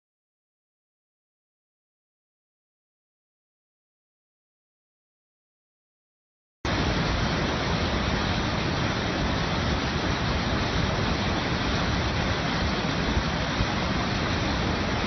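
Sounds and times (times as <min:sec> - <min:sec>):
waterfall roaring: 0:06.7 - 0:15.0.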